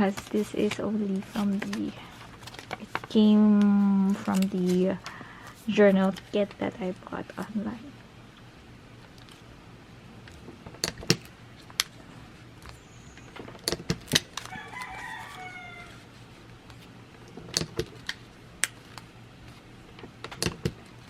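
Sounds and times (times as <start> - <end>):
paper being handled: 0.0 - 7.4
rooster crowing: 14.4 - 16.1.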